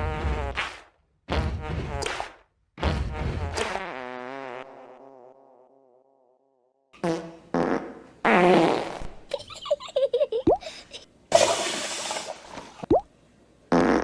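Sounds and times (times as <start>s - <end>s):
cartoon fart sounds: 0.0s - 0.7s, 1.3s - 6.3s, 7.0s - 9.4s, 11.3s - 13.0s, 13.7s - 14.0s.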